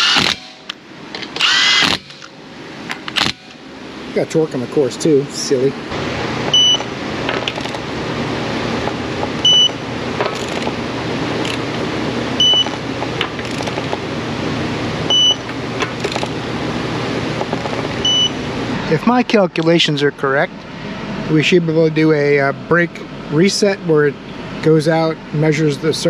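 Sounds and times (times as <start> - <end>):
car engine idling: 0.0 - 26.0
short electronic beep: 6.5 - 6.9, 9.4 - 9.8, 12.4 - 12.8, 15.1 - 15.4, 18.0 - 18.4.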